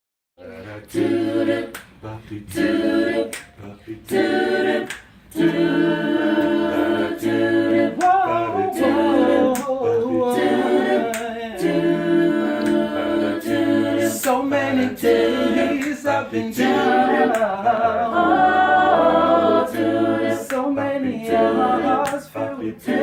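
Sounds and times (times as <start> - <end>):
vocal group singing harmony: 0.4 - 23.0
finger snaps: 1.7 - 1.9, 3.3 - 3.6, 4.8 - 5.6, 9.5 - 9.8, 11.1 - 11.3, 20.5 - 20.7.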